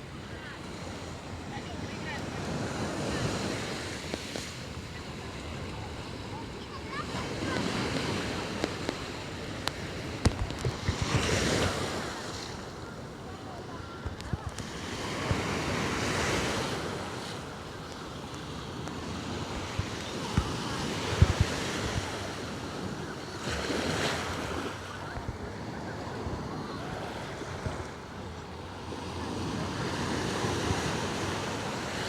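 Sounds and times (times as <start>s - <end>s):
sea waves washing onto shore: 0.1s - 32.0s
wind buffeting microphone: 2.8s - 12.2s, 18.6s - 23.2s.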